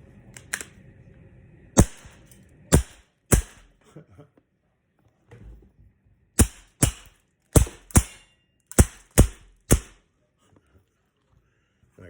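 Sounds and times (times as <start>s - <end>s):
airsoft revolver shots: 1.8s - 3.7s, 6.4s - 10.0s.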